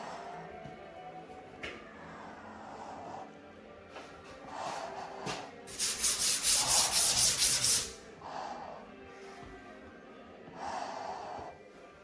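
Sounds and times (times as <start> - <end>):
sanding drywall rasping rub: 5.7 - 8.0.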